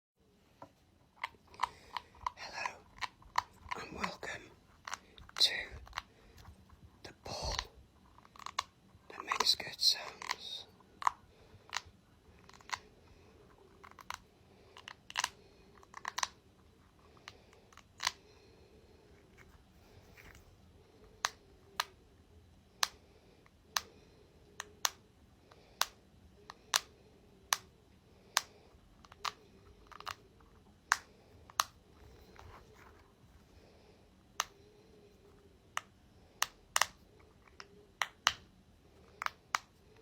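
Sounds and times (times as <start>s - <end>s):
ball clicks and taps: 14.8s - 16.4s, 28.3s - 30.2s, 35.7s - 38.5s.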